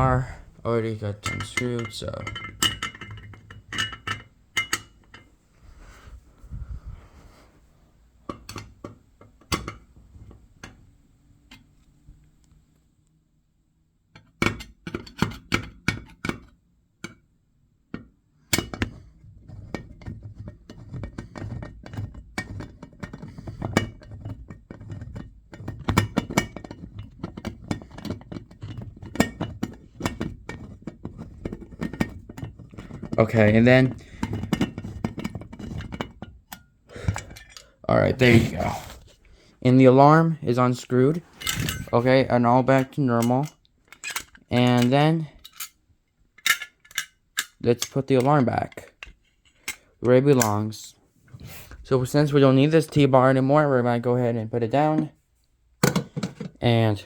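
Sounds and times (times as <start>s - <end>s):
screwdriver and metal parts clinking: 1.2s - 5.3s, 19.6s - 39.0s, 41.1s - 45.8s, 46.4s - 50.6s.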